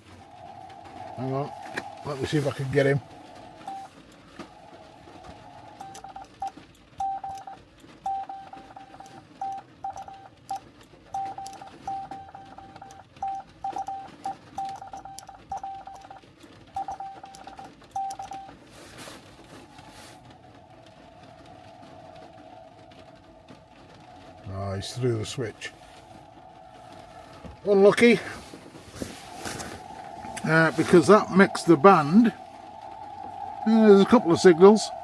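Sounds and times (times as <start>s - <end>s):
radio receiver hiss: 0.0s - 7.6s, 18.4s - 35.0s
morse code tone: 3.6s - 3.9s, 5.7s - 18.6s.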